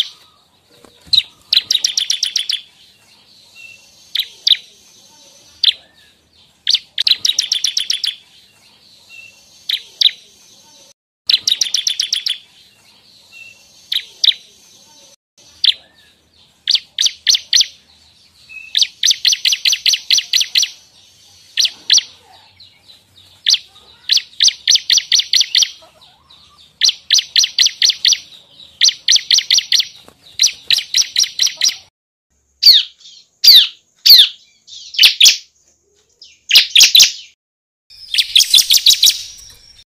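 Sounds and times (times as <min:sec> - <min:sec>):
bird singing trills: 0:00.0 - 0:31.9, 0:32.5 - 0:39.8
bird sharp chips: 0:26.8 - 0:31.9, 0:36.2 - 0:39.8.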